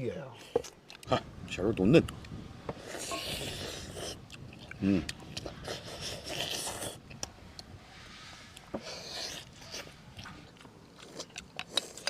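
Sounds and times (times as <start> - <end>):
people chewing and biting: 2.0 - 7.7, 8.5 - 12.0.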